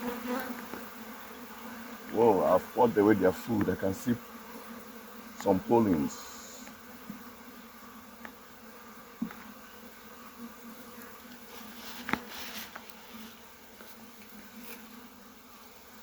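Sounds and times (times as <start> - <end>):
clicks from handling hive: 0.0 - 1.0, 3.4 - 3.8, 5.3 - 7.2, 8.2 - 8.4, 9.1 - 9.6, 11.0 - 13.2
honeybees buzzing: 0.0 - 16.0.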